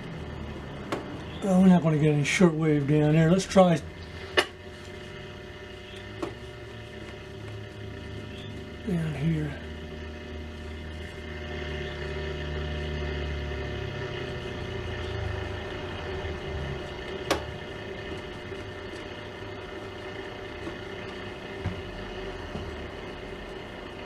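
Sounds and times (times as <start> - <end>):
steady hum: 0.0 - 24.0
radio static: 1.3 - 12.4.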